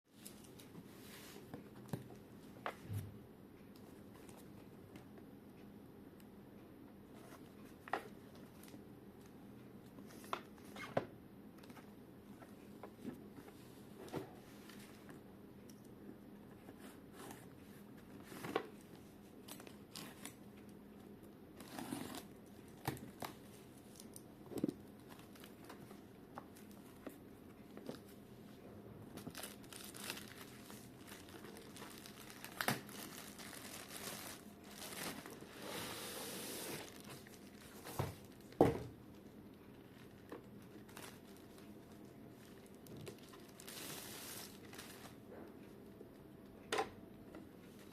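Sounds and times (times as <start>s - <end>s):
plastic and paper crinkling: 21.6s - 28.2s, 29.1s - 35.6s, 36.7s - 45.2s.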